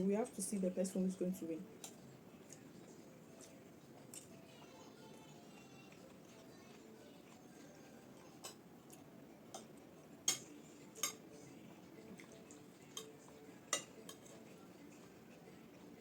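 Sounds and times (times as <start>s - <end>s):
utensils clinking against plates: 10.3s - 11.2s, 12.2s - 14.5s.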